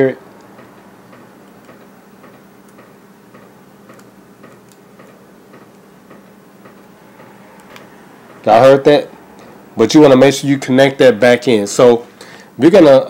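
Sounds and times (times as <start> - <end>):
faint steady hum: 0.0 - 13.0
steady ticking: 0.4 - 8.5.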